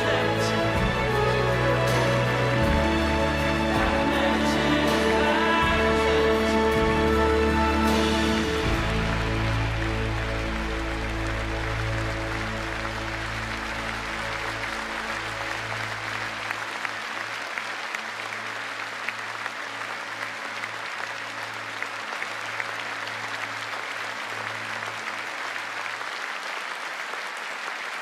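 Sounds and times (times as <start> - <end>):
held music chord: 0.0 - 16.2
audience applauding: 0.0 - 28.0.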